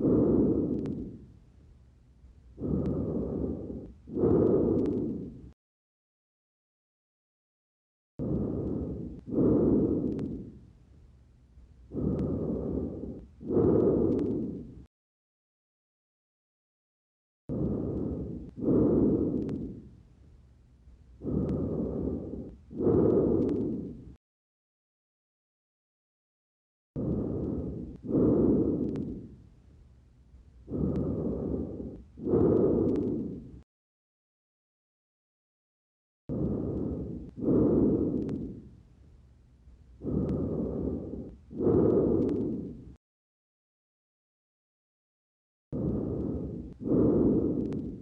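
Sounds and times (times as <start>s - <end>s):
breath sounds through stethoscope: 0.0s - 5.6s, 8.2s - 14.9s, 17.5s - 24.2s, 27.0s - 33.7s, 36.3s - 43.0s, 45.7s - 48.0s.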